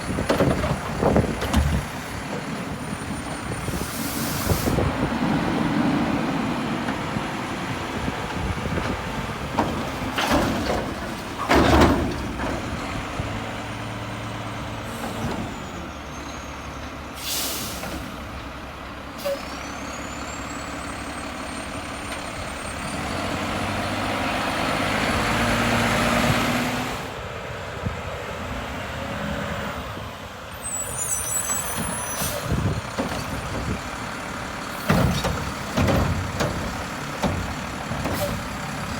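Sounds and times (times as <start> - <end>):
garbage truck engine running: 0.0 - 27.4, 30.2 - 38.9
air brake hiss: 3.7 - 4.8, 17.2 - 18.1, 19.2 - 19.6, 30.8 - 32.5
loud bangs and clanks: 34.8 - 38.9.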